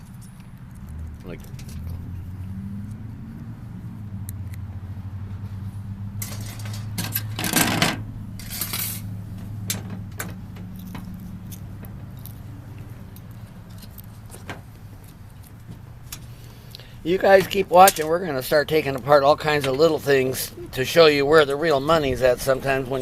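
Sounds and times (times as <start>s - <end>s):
small metal parts clinking: 6.2s - 9.1s, 9.7s - 12.4s, 13.1s - 14.1s.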